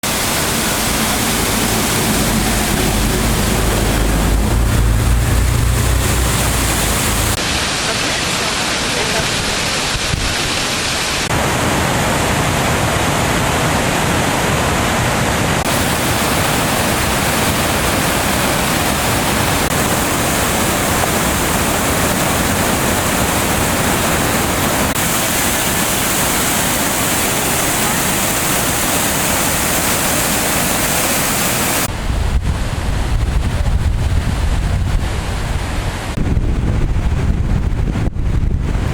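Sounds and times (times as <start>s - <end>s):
fast-flowing water rushing: 0.0s - 31.9s
wind rumble on microphone: 0.1s - 7.4s, 31.5s - 38.9s.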